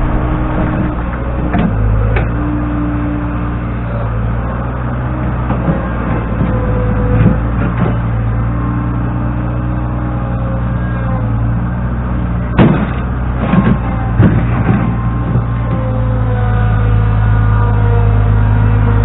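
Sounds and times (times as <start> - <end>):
engine knocks: 0.0 - 3.6, 12.6 - 16.0
loader engine running: 0.0 - 19.0.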